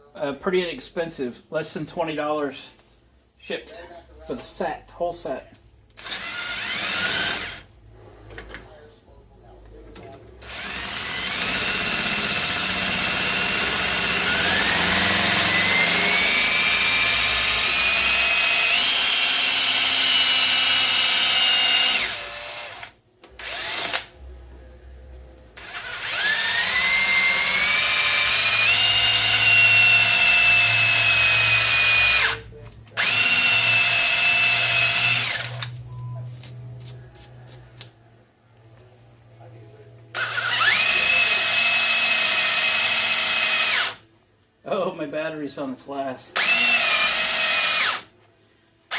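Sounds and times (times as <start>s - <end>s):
cordless drill whining: 6.0s - 7.7s, 10.4s - 24.1s, 25.6s - 32.4s, 33.0s - 35.7s, 40.2s - 44.0s, 46.4s - 48.0s.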